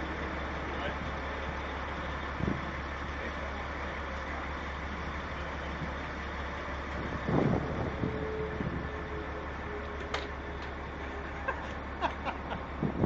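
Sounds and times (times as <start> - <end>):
truck engine idling: 0.0 - 13.0.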